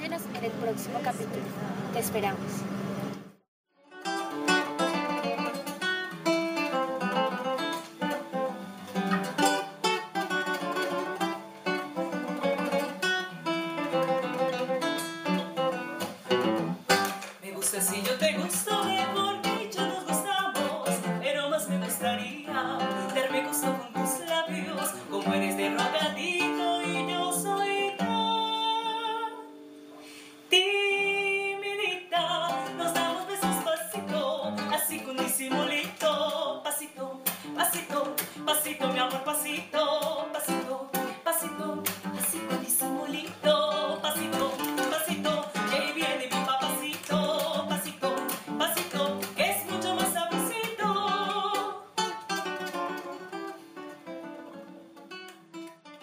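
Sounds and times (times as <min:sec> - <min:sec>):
plucked guitar music: 0:03.8 - 0:30.1, 0:31.4 - 0:56.0
person singing: 0:17.4 - 0:29.6, 0:30.5 - 0:52.1.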